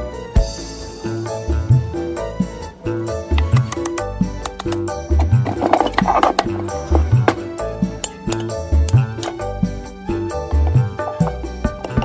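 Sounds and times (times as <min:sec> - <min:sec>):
steady drum beat: 0:00.3 - 0:12.0
plucked strings: 0:03.3 - 0:09.4.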